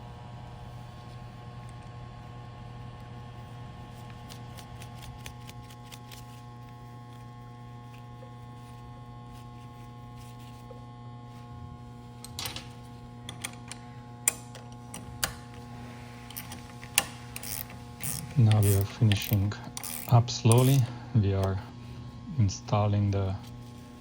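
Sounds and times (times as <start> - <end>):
steady electrical hum: 0.0 - 24.0
light clicks of tools: 16.2 - 21.5.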